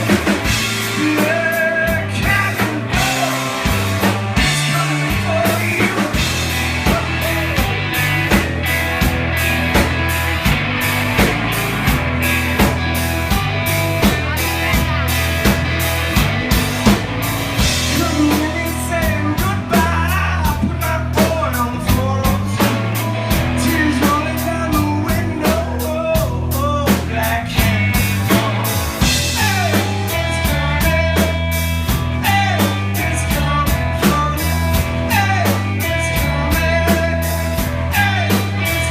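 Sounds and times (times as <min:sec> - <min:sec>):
person singing: 0:00.0 - 0:08.6, 0:17.7 - 0:38.9
drum kit beat: 0:00.0 - 0:38.9
electric guitar and bass: 0:00.0 - 0:38.9.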